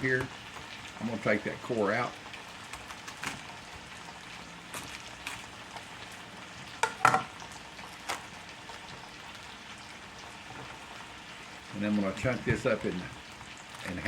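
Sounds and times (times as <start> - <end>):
potatoes sizzling in a skillet: 0.0 - 14.0
knife cutting cabbage: 2.6 - 3.6, 4.7 - 5.6.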